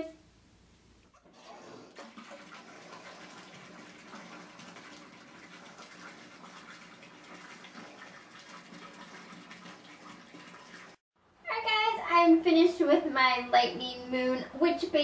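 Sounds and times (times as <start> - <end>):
water running into bathtub: 1.1 - 11.0.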